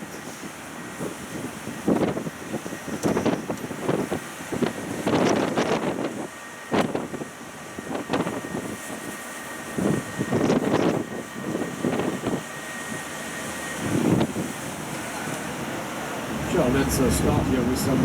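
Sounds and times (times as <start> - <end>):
wind buffeting microphone: 0.4 - 13.1, 13.7 - 18.0
vehicle engine and road noise: 16.3 - 18.0.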